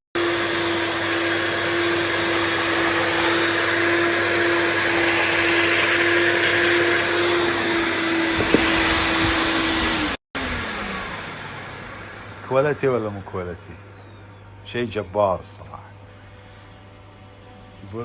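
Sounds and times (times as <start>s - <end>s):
vacuum cleaner whine and suction: 0.1s - 18.0s
knock: 8.4s - 9.4s.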